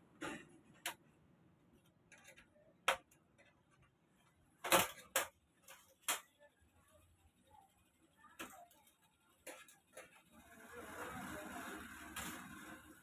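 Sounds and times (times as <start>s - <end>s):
sharp clicks and taps of parts: 0.7s - 1.2s, 1.8s - 4.0s.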